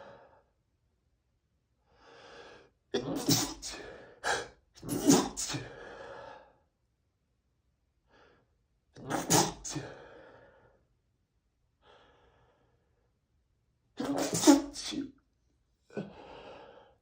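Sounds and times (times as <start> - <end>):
man sneezing: 3.0 - 5.8, 9.0 - 10.0, 14.0 - 15.2.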